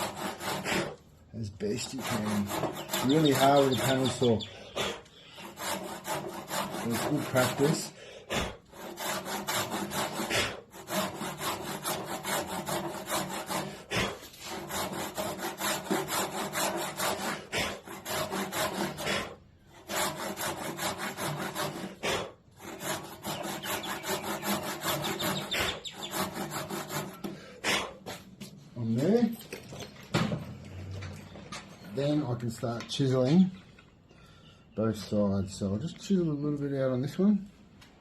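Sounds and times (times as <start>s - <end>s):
hand saw cutting wood: 0.0s - 29.3s.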